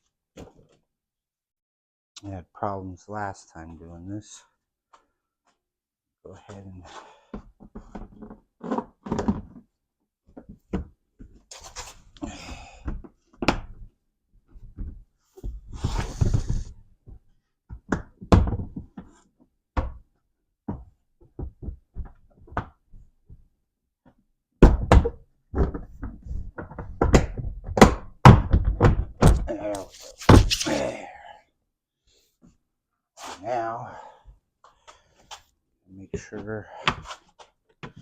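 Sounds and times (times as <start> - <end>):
plastic scraping: 29.7 - 30.8.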